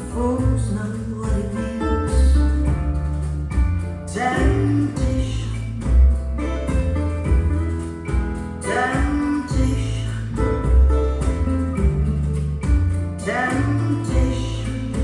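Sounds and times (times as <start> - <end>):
guitar: 0.0 - 15.0
heavy bass line: 0.0 - 15.0
person singing: 4.1 - 6.7, 8.6 - 11.6, 13.2 - 15.0.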